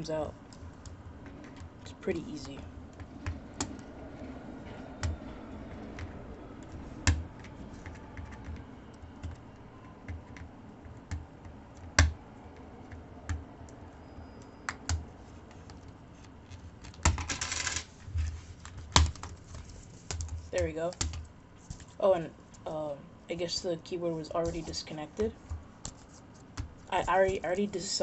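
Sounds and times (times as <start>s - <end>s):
plastic keyboard clicks and taps: 10.0s - 13.4s, 18.7s - 19.3s.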